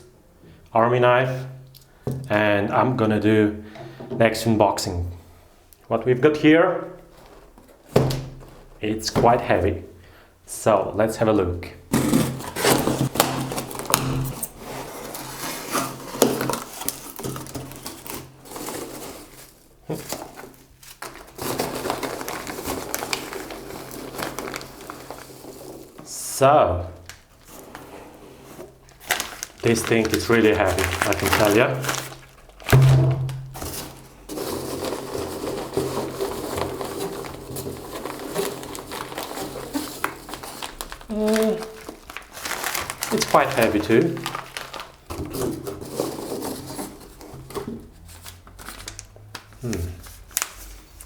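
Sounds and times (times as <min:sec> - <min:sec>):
packaging scraping and rustling: 0:07.0 - 0:08.8, 0:11.9 - 0:26.1, 0:27.0 - 0:51.0
knife scraping cardboard: 0:11.9 - 0:17.2
knock on packaging: 0:12.9 - 0:14.4, 0:32.6 - 0:33.9.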